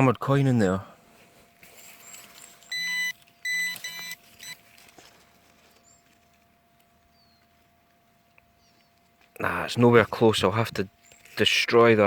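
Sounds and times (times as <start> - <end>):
metal detector signal tones: 2.4 - 4.6.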